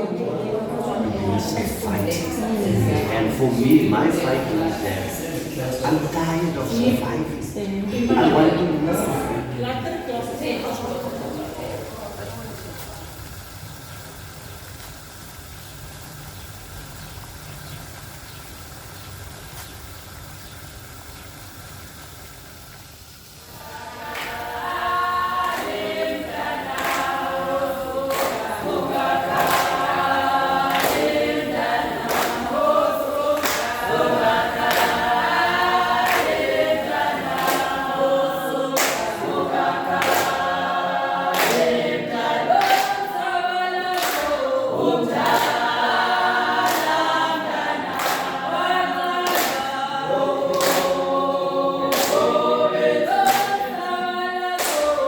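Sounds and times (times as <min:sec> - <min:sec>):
group singing a cappella: 0:00.0 - 0:14.3, 0:23.0 - 0:55.0
sharp percussive strokes on beat: 0:22.8 - 0:53.8.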